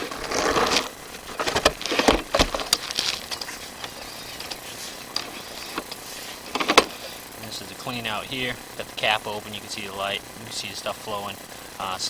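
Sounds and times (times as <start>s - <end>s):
handling knocks and rustling: 0.0s - 7.2s.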